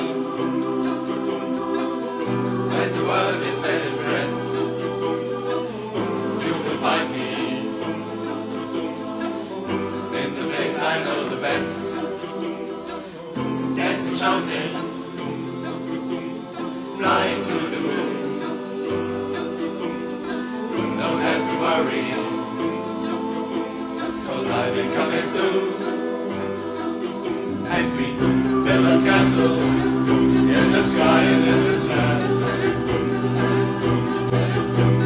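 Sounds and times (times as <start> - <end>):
choir singing in chords: 0.0 - 35.0.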